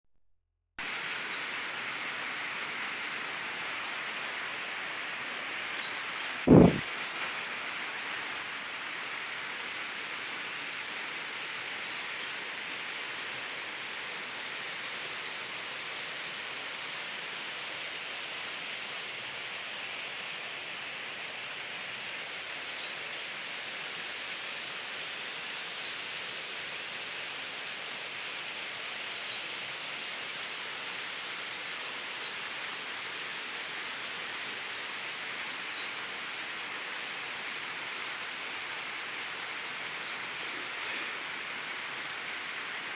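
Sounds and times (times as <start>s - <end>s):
waterfall rushing: 0.8s - 10.2s, 36.4s - 42.9s.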